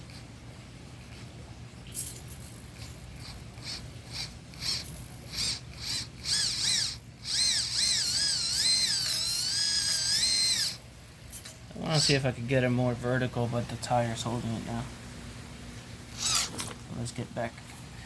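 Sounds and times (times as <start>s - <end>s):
toy motor and gears whining: 2.7s - 10.8s, 11.8s - 12.2s, 16.1s - 16.7s.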